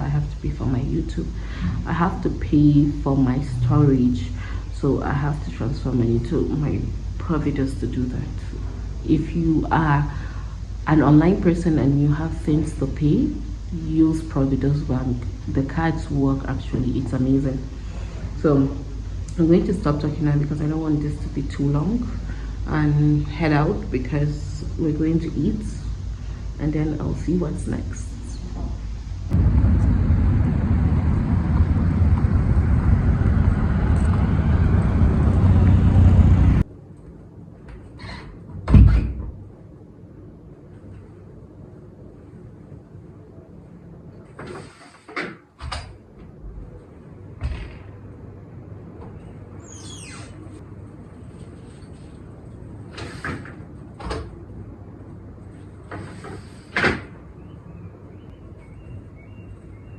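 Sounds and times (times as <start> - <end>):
car interior rumble: 0.0 - 9.7, 28.4 - 36.7
steady low hum: 0.0 - 44.6, 45.6 - 59.9.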